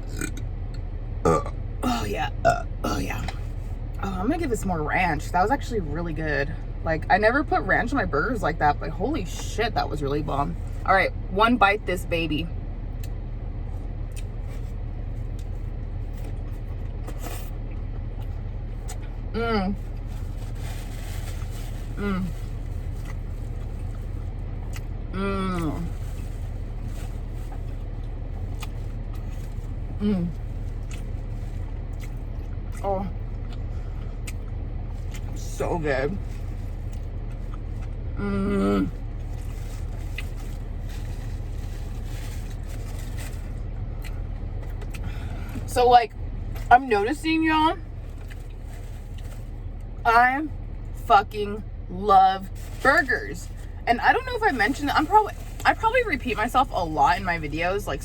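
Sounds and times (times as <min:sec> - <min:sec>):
idling car rumble: 0:00.0 - 0:58.0
rustling of food handling: 0:19.8 - 0:38.1, 0:38.8 - 0:45.7, 0:47.8 - 0:50.0, 0:52.2 - 0:56.8
person chewing food: 0:30.6 - 0:35.3.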